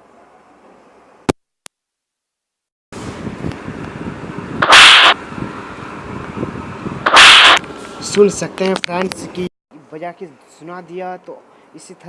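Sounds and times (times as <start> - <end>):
comedy slap sound effect: 4.6 - 5.2, 7.1 - 7.6.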